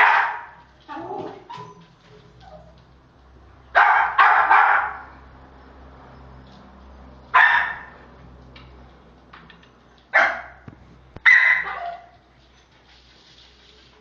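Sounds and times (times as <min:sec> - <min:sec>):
dog barking: 0:00.0 - 0:00.6, 0:03.8 - 0:05.1, 0:07.3 - 0:08.0, 0:10.2 - 0:10.6, 0:11.2 - 0:12.1.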